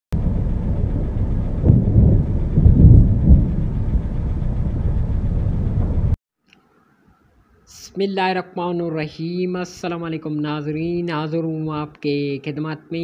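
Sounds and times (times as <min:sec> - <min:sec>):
thunder rumbling: 0:00.2 - 0:06.2.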